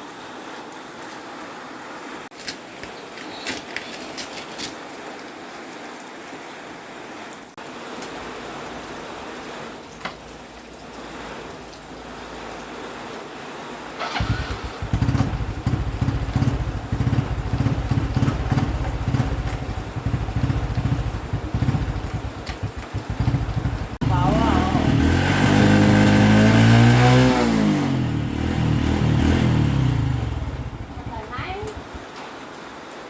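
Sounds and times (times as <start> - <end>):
motorbike engine running: 14.0 - 32.1.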